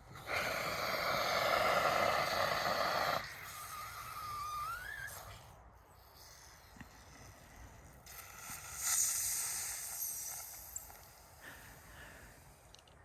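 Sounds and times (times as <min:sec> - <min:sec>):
pressurised air hissing: 0:03.0 - 0:12.8
faint wavering whistle: 0:03.4 - 0:05.5.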